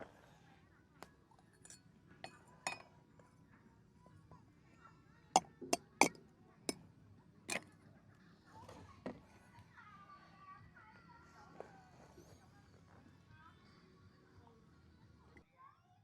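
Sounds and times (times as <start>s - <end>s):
hard objects clinking: 5.4s - 6.2s.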